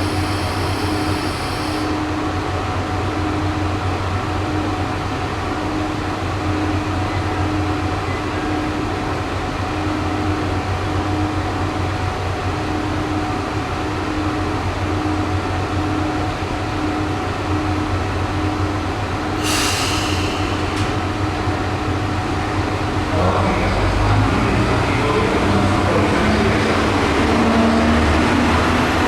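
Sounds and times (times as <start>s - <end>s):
diesel railcar engine drone: 0.0s - 29.0s
hissing burst: 19.4s - 21.0s.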